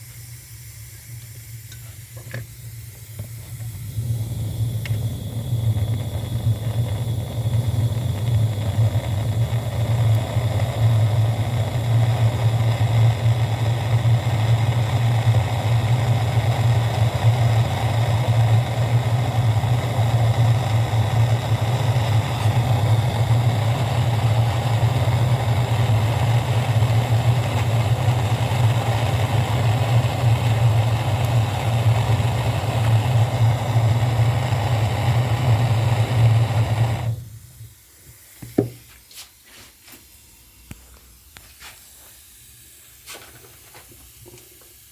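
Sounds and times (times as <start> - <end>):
motor-driven machine humming: 3.1 - 37.7.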